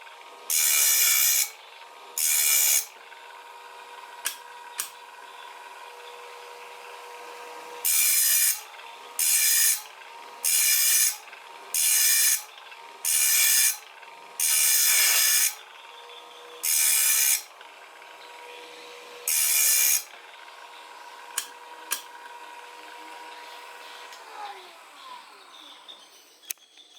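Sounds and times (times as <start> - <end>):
grinding wheel humming: 0.0 - 26.6
grinding saw blade teeth: 0.5 - 1.6, 2.2 - 3.0, 7.8 - 17.6, 19.2 - 20.2, 21.2 - 26.9.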